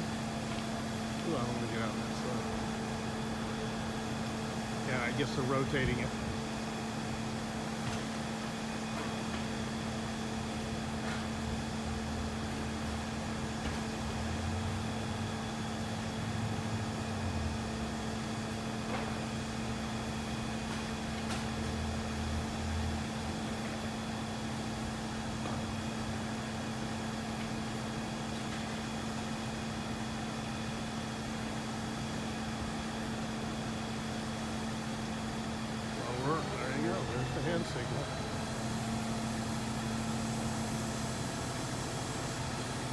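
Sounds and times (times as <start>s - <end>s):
heavy engine rumbling: 0.0s - 6.8s, 35.8s - 40.6s.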